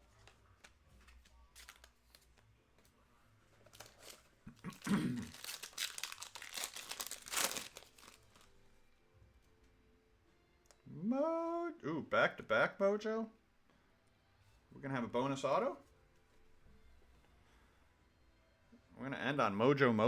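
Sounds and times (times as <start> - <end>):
wrapper crackling: 0.0 - 2.4, 3.6 - 8.6.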